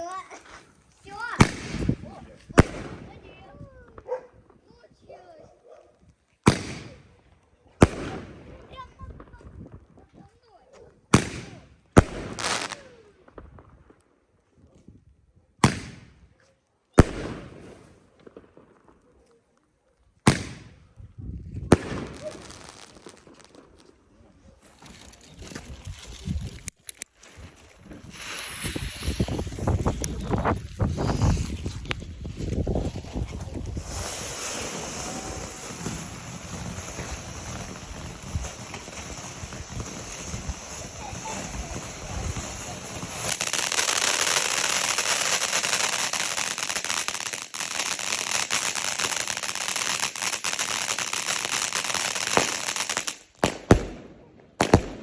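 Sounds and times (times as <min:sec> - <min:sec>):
faint fireworks crackling: 0:00.0 - 0:55.0
wind buffeting microphone: 0:01.1 - 0:05.2, 0:08.5 - 0:11.1, 0:20.7 - 0:22.3, 0:25.3 - 0:26.8, 0:27.4 - 0:43.4
loud fireworks bangs with echo: 0:01.2 - 0:03.6, 0:06.5 - 0:07.0, 0:07.8 - 0:09.1, 0:11.1 - 0:13.6, 0:15.6 - 0:16.1, 0:20.3 - 0:20.8, 0:21.7 - 0:23.7, 0:27.9 - 0:30.3, 0:33.6 - 0:55.0.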